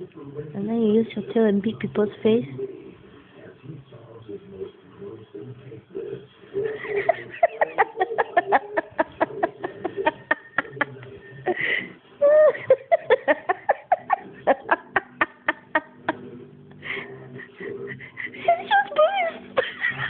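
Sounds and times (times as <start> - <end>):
person laughing: 6.8 - 16.2, 17.6 - 20.0.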